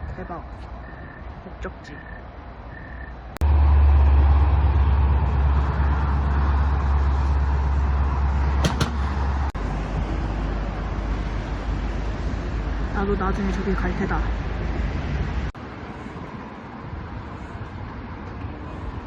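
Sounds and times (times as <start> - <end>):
vehicle rumbling: 0.0 - 19.0.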